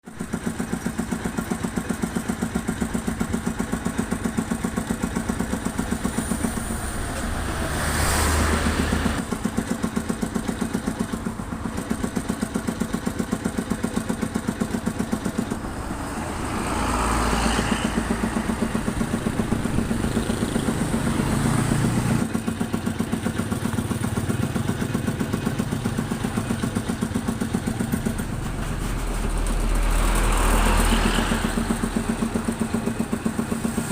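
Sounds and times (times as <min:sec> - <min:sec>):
engine idling: 0:00.1 - 0:33.9
passing vehicle: 0:05.0 - 0:09.5, 0:14.8 - 0:22.4, 0:27.7 - 0:33.9.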